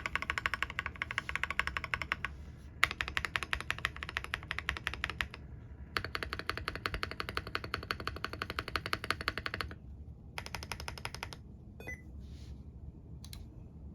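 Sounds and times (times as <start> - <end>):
fast mechanical keyboard typing: 0.0 - 9.8, 10.4 - 11.4.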